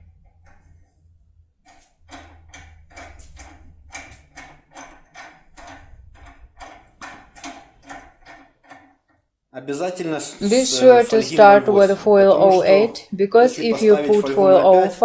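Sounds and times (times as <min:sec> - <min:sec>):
lockpick scraping inside lock: 0:01.7 - 0:09.1.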